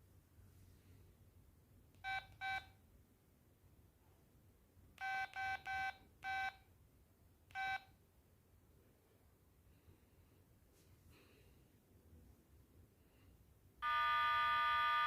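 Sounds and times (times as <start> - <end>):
mobile phone keypad beeps: 2.0 - 2.7, 5.0 - 6.6, 7.6 - 7.9.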